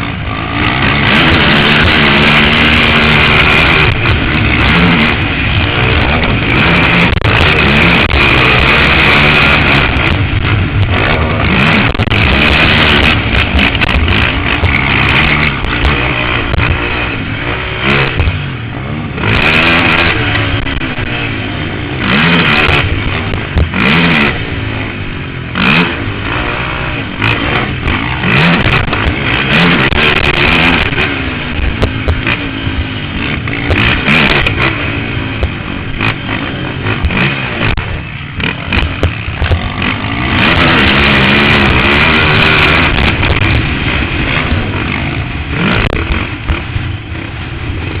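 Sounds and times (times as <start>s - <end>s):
quad engine revving: 0.0s - 48.0s
knocks and clatter: 0.6s - 17.1s, 35.4s - 46.8s.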